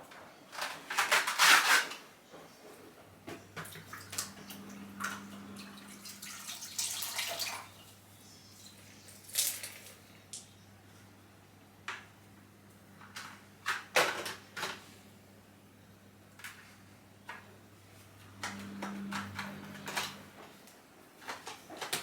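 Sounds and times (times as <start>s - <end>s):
low steady hum: 3.0s - 13.7s
mop water sloshing: 3.3s - 8.0s.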